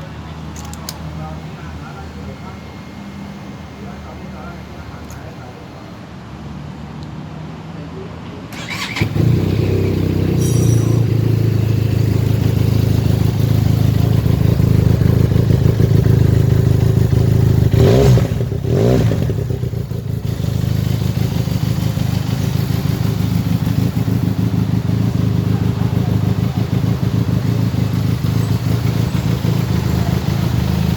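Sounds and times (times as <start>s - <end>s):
motorcycle engine idling and revving: 8.5s - 30.9s.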